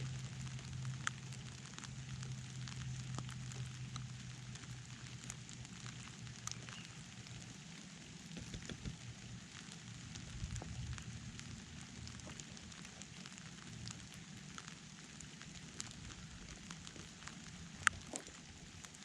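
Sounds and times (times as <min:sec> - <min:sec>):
low rumble: 0:00.0 - 0:07.5, 0:09.1 - 0:14.7
rain falling: 0:00.0 - 0:19.0
raindrops ticking close by: 0:00.0 - 0:19.0.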